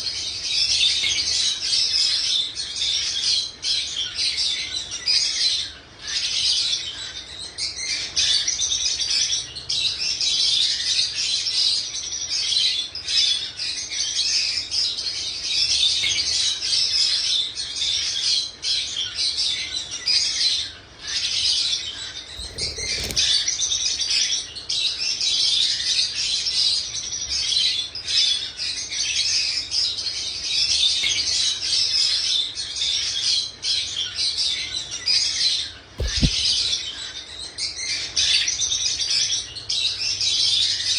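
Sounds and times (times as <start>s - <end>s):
pet birds chirping: 0.0s - 40.9s.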